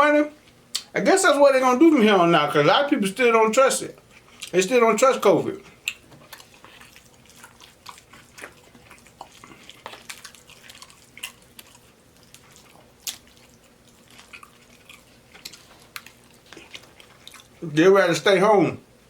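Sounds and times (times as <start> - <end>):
close chewing and lip-smacking: 3.9 - 4.6, 5.5 - 17.7.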